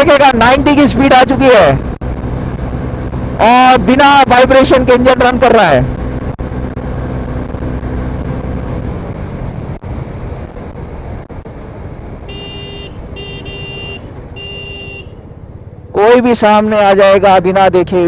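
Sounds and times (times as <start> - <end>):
vehicle horn blasts: 12.3 - 15.2.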